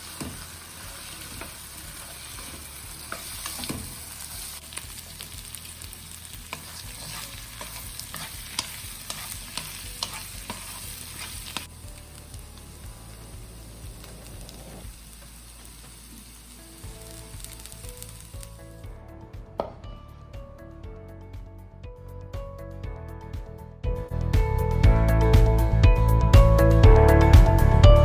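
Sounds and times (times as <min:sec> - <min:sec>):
spatula scraping a pan: 0:00.0 - 0:04.7, 0:06.4 - 0:11.7
stir-fry sizzling in a pan: 0:00.0 - 0:18.8.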